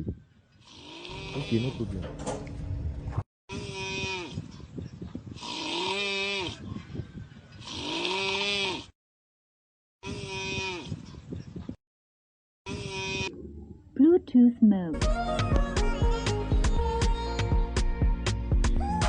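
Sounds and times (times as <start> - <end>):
bleat-like snoring: 0.6 - 1.9, 5.4 - 6.6, 7.6 - 9.0.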